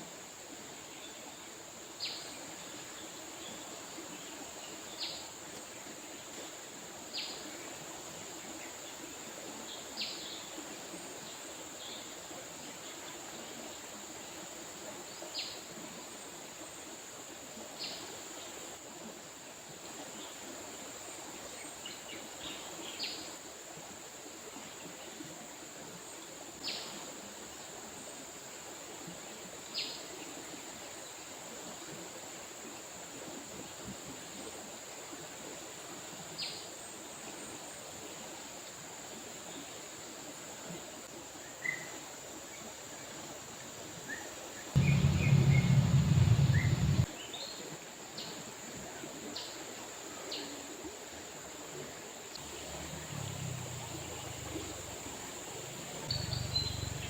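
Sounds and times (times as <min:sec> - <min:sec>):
bird chirping: 0:44.8 - 0:47.1, 0:53.6 - 0:57.0
high insect drone: 0:44.8 - 0:47.1, 0:52.4 - 0:57.0
river water flowing: 0:44.8 - 0:47.1, 0:52.4 - 0:57.0.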